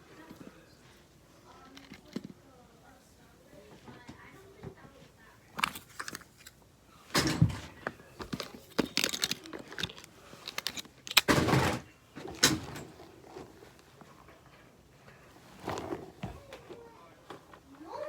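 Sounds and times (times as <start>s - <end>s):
plastic toys rustling and clicking: 1.5s - 2.4s, 5.5s - 17.7s
scraping rustles: 5.6s - 17.6s.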